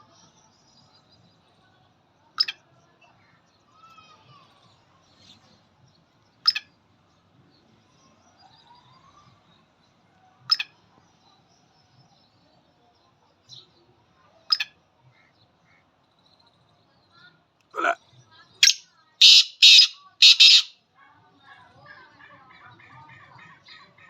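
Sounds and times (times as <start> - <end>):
bird chirps: 6.4 - 6.7, 18.6 - 20.7
francolin calling: 18.6 - 20.7.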